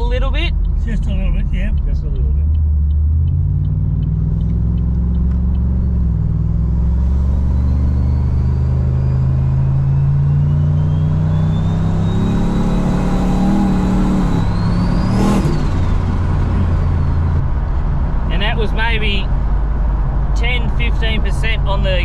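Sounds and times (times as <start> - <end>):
car engine accelerating: 0.0 - 18.2
turbo whine: 2.6 - 16.3.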